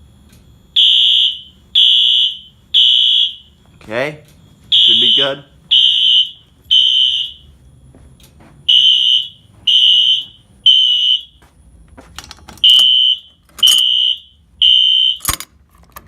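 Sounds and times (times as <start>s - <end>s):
electronic alarm horn blasts: 0.7s - 3.6s, 4.7s - 7.6s, 8.7s - 11.4s, 12.6s - 15.4s.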